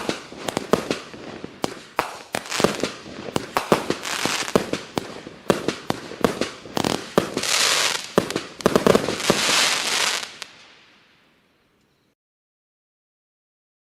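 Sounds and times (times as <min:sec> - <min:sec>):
fireworks sharp reports: 0:00.0 - 0:10.5
crackling hiss of bursting stars: 0:00.0 - 0:11.3.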